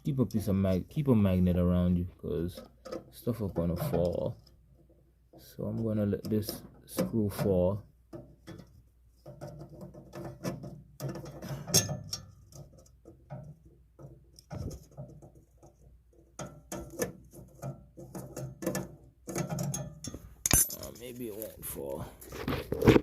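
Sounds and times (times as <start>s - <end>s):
metal parts being handled: 8.4s - 23.0s.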